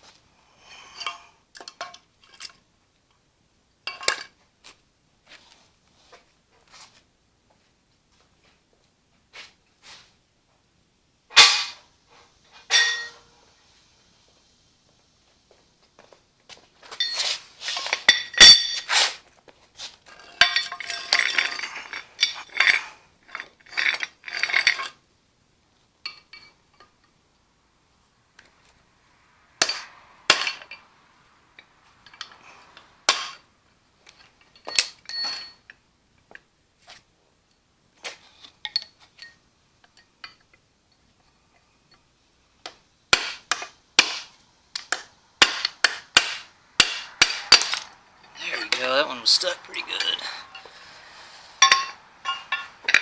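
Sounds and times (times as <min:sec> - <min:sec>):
metal tools knocking on steel parts: 0:12.6 - 0:13.3, 0:44.7 - 0:50.7, 0:51.6 - 0:53.0.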